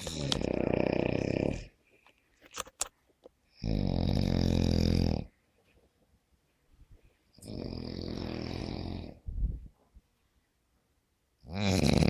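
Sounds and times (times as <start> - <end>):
person snoring: 0.0 - 1.8, 3.6 - 5.3, 7.4 - 9.2, 11.4 - 12.0.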